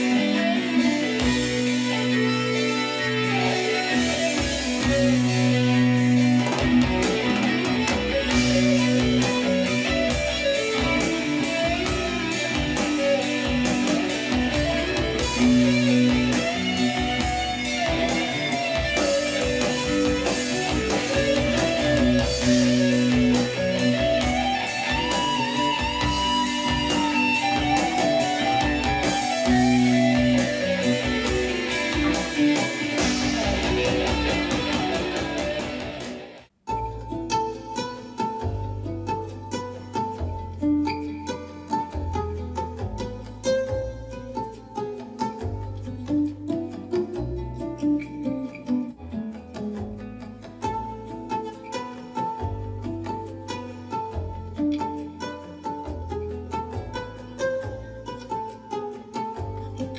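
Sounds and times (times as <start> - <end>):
rock music on portable speaker: 0.0 - 36.5.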